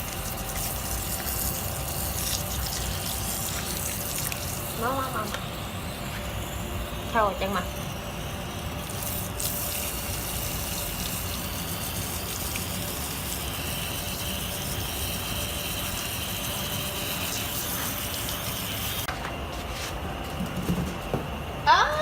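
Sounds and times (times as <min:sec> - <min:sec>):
water running: 0:00.0 - 0:06.2, 0:08.8 - 0:19.1.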